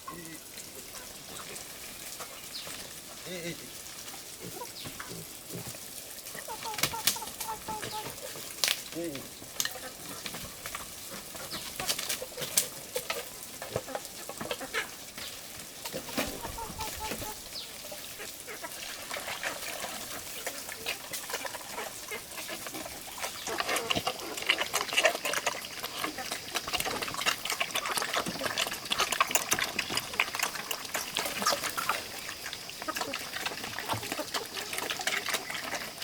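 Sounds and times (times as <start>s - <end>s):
rustling: 0.0s - 36.0s.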